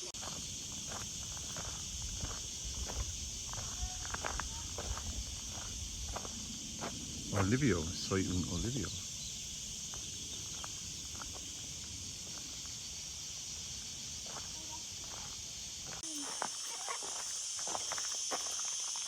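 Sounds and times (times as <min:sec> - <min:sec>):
high-pitched insect chorus: 0:00.0 - 0:19.0
faint footstep scuffs: 0:14.2 - 0:19.0.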